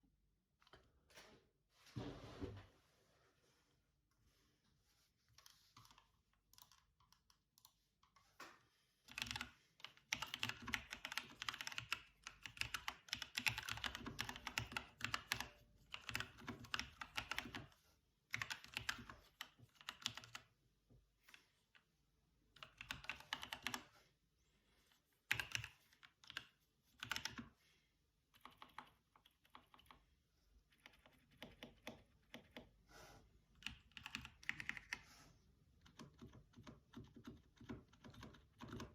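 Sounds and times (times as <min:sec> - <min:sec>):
mechanical keyboard typing: 0:09.1 - 0:17.7, 0:18.3 - 0:20.5, 0:22.6 - 0:23.8, 0:25.3 - 0:27.5, 0:28.4 - 0:30.0, 0:33.6 - 0:35.0, 0:35.8 - 0:38.9.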